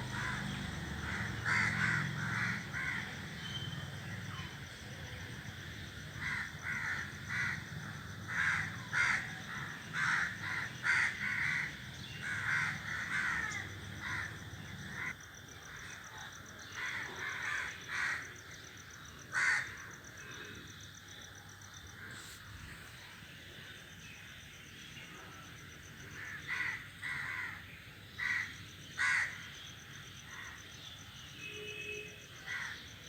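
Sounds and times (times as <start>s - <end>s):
crows cawing: 0.0s - 3.5s, 6.1s - 15.2s, 16.7s - 18.4s, 19.3s - 19.9s, 26.1s - 27.6s, 28.2s - 29.4s, 32.5s - 32.8s.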